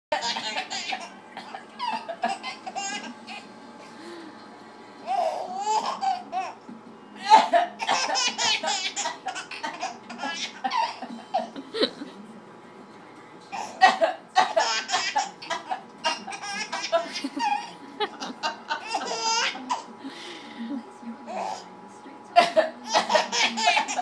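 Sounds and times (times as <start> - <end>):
baby laughing: 0.2 - 3.5, 5.0 - 6.6, 7.2 - 12.0, 13.5 - 19.9, 22.4 - 24.0.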